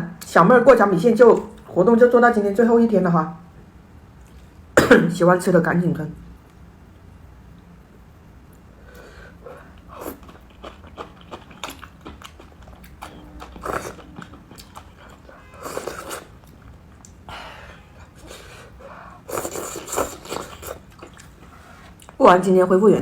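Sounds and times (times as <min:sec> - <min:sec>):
person biting and chewing: 0:09.8 - 0:17.2.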